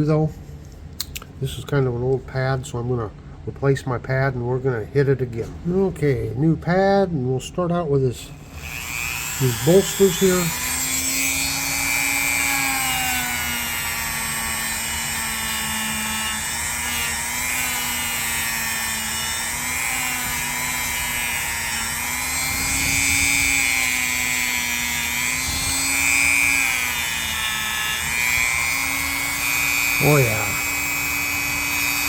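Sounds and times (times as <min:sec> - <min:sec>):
power tool motor whining: 0:08.3 - 0:32.0.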